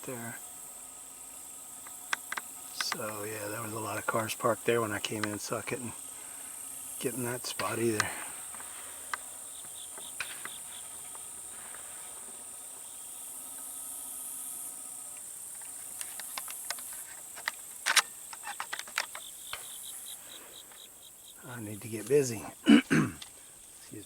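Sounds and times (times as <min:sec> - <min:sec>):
cricket chirps: 0:00.0 - 0:24.0
insects droning: 0:00.0 - 0:24.0
sharp clicks and knocks: 0:01.8 - 0:03.2, 0:05.0 - 0:05.8, 0:15.2 - 0:19.8.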